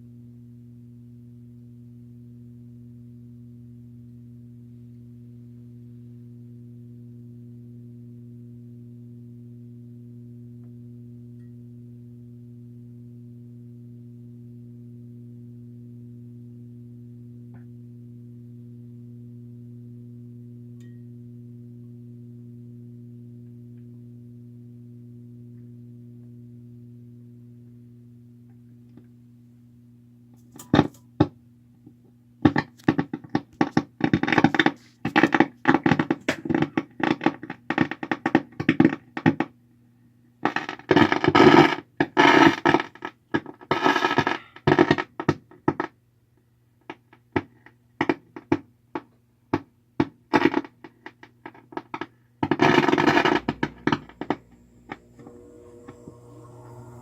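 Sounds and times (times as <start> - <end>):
steady low hum: 0.0 - 37.8, 51.7 - 57.0
amp speaker crackling and popping: 30.3 - 39.6, 40.3 - 57.0.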